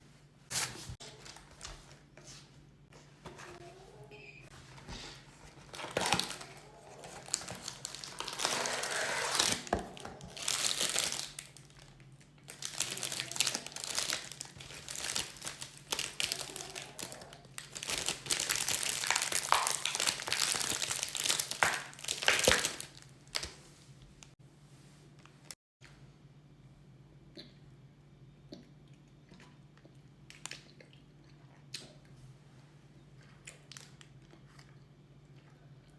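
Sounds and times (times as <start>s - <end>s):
plastic packaging crinkling and tearing: 5.5s - 23.6s.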